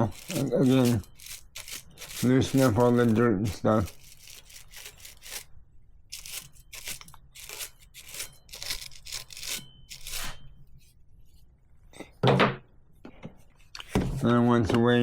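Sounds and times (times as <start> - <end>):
brush scrubbing: 0.0 - 5.5, 6.1 - 10.4, 13.4 - 15.0.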